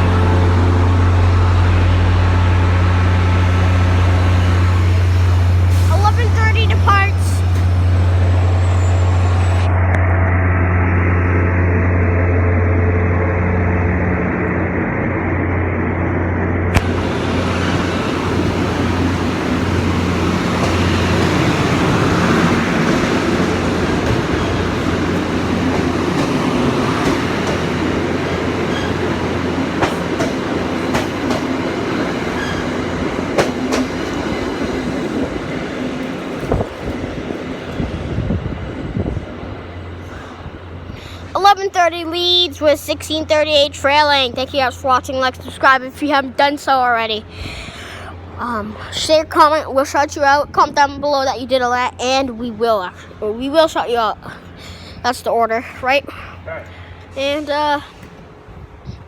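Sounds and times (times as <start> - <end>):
diesel locomotive engine droning: 0.0 - 59.0
train coaches rumbling past: 0.0 - 59.0.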